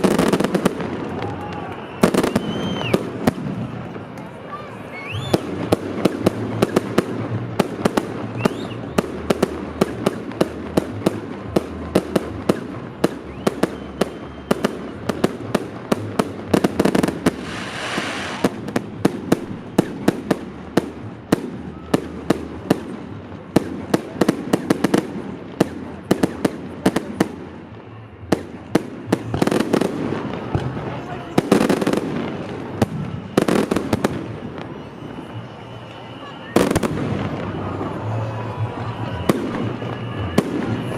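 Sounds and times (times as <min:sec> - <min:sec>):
fireworks crackling hiss: 0:00.0 - 0:27.5
fireworks bangs: 0:00.0 - 0:40.9.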